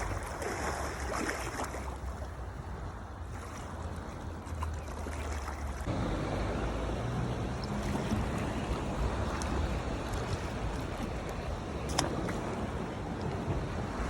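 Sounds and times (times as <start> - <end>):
sea water washing and surging: 0.0 - 14.0
wind rumbling on microphone: 5.7 - 14.0.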